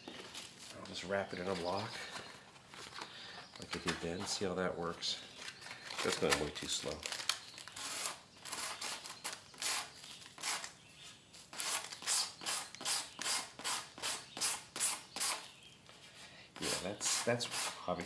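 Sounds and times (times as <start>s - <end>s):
sandpaper rubbing: 7.8s - 10.7s, 11.4s - 15.5s, 16.6s - 18.0s.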